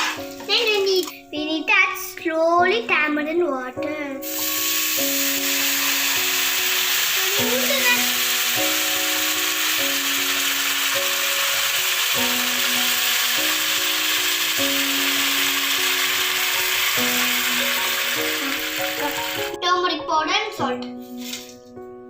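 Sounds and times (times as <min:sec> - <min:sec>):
background music of held notes: 0:00.0 - 0:22.0
sizzling in a pan: 0:04.2 - 0:19.6.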